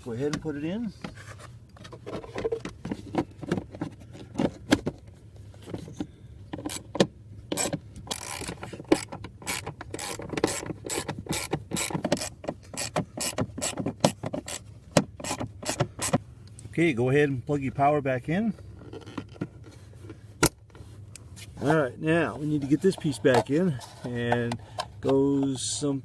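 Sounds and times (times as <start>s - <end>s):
socket ratchet clicking: 7.5s - 14.6s.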